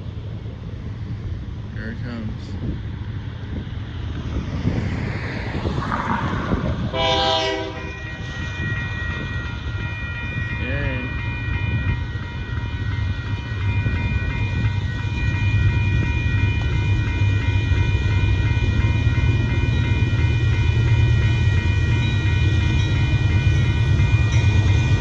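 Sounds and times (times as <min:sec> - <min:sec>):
freight train rumbling on rails: 0:00.0 - 0:25.0
high ringing tones: 0:07.8 - 0:25.0.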